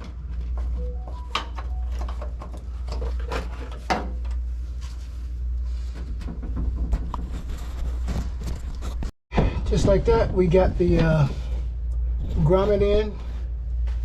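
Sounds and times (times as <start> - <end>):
steady low hum: 0.0 - 14.0
rubbing and scraping by hand: 4.6 - 9.1.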